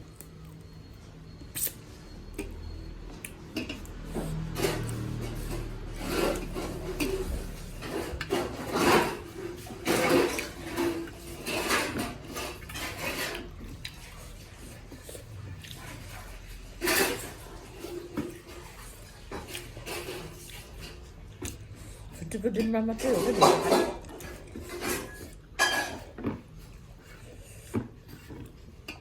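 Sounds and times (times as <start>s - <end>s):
scrapes and clinks on a plate: 3.6s - 13.6s, 16.7s - 18.4s, 23.0s - 26.4s.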